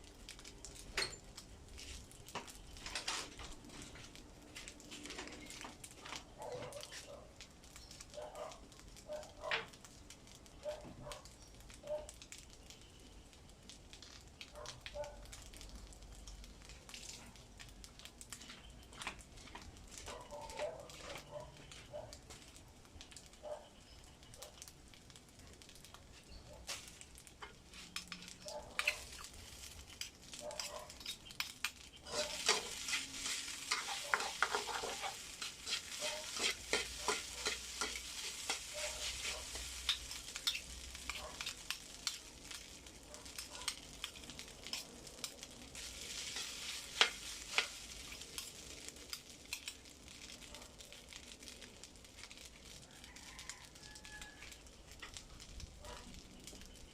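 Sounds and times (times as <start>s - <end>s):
fried rice sizzling in a pan: 0.0s - 56.9s
spatula scraping a pan: 28.8s - 42.2s, 43.3s - 48.6s.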